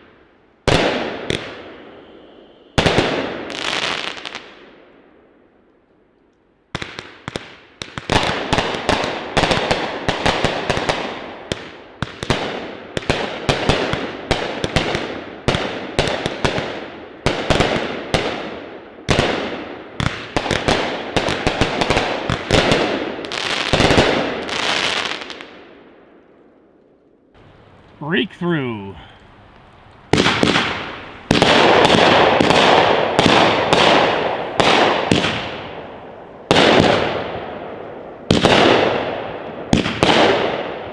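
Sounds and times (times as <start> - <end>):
fireworks launching and bursting: 30.1 - 37.4.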